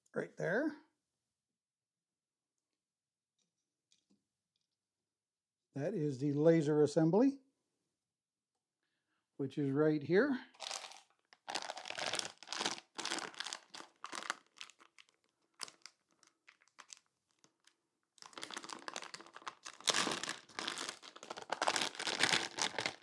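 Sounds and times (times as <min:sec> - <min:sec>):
hands crinkling and rustling: 0:10.6 - 0:23.0.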